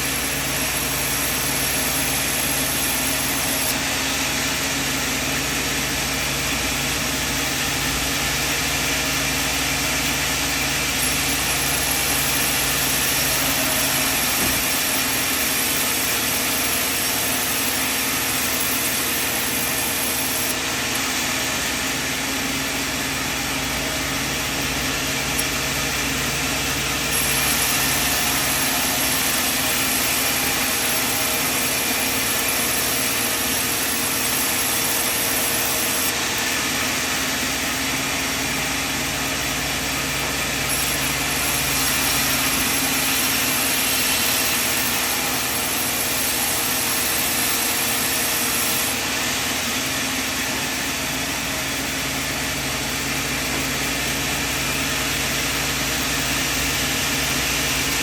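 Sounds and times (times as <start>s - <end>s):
sawmill machine drone: 0.0s - 58.0s
machine hiss: 7.2s - 21.6s, 23.2s - 37.8s, 40.5s - 50.8s.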